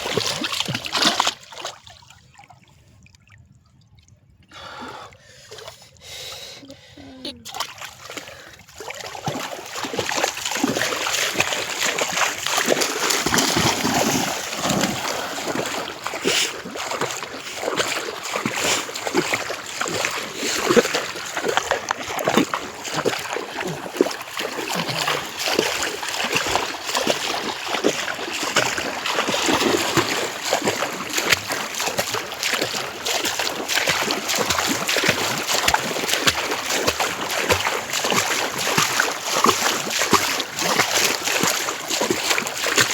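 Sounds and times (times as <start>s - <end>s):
water splashing and sloshing: 0.0s - 42.9s.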